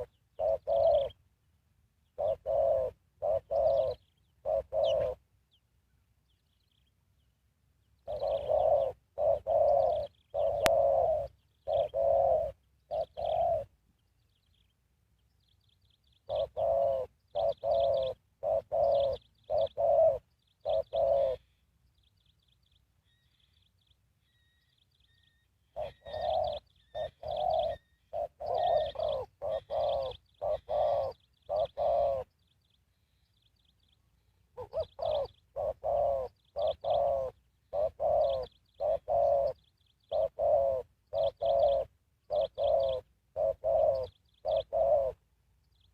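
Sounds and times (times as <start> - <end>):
dove cooing: 0.0 - 1.3, 2.0 - 5.3, 8.0 - 13.8, 16.2 - 21.6, 24.4 - 33.2, 34.4 - 45.3
small birds chirping: 0.0 - 45.9.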